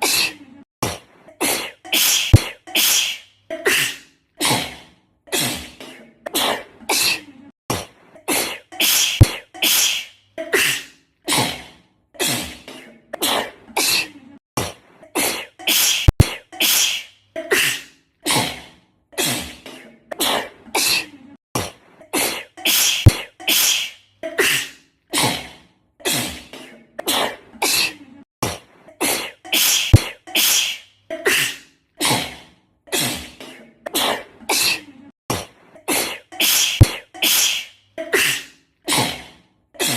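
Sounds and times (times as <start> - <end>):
girl sneezing: 1.4 - 4.6, 8.3 - 11.5, 15.2 - 18.5, 22.1 - 25.4, 29.0 - 32.2, 35.9 - 39.1.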